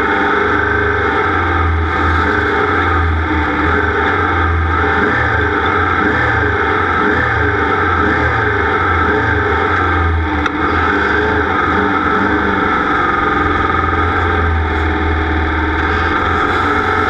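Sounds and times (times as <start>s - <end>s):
race car engine running steadily: 0.0s - 17.0s.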